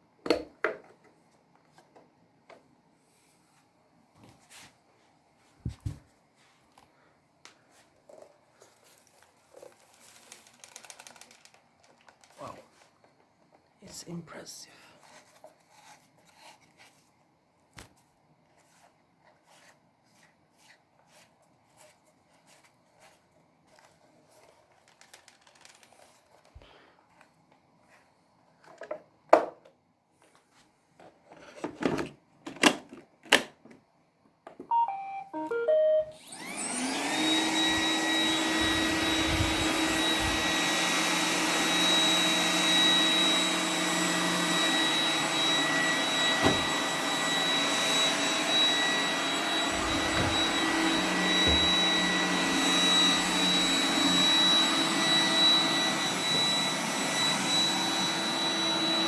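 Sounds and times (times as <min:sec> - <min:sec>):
robot vacuum start-up beeps: 0:34.7 - 0:40.2, 0:44.4 - 0:59.0
vacuum motor running: 0:34.7 - 0:59.0.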